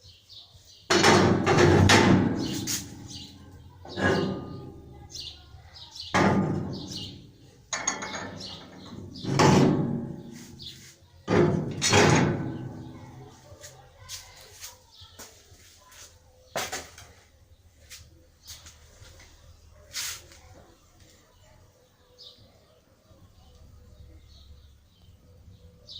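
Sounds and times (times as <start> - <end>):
ringing knocks or bangs: 6.2 - 10.2.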